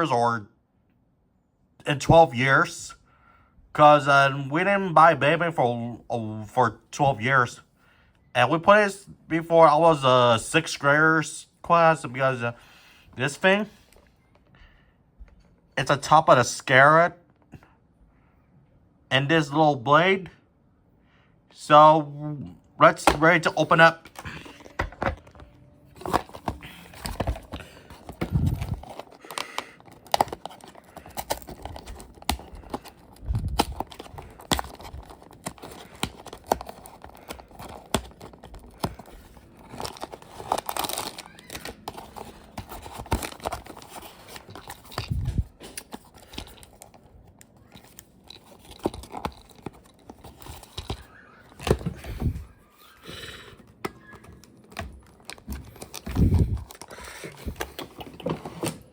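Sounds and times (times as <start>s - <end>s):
plastic packaging crinkling: 24.1s - 51.8s, 54.3s - 57.8s.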